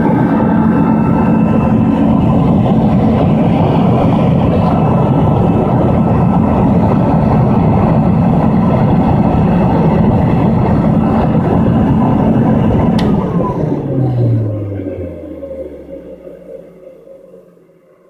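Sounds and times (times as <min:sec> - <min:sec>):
vacuum cleaner whirring: 0:00.0 - 0:16.8
switch click: 0:13.0 - 0:13.3.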